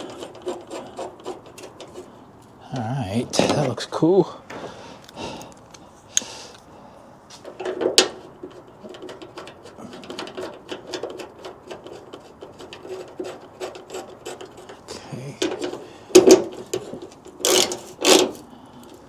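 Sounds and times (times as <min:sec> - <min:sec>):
hardware clattering: 0:02.7 - 0:04.7, 0:07.4 - 0:18.5
metallic clicking and knocks: 0:07.4 - 0:14.8.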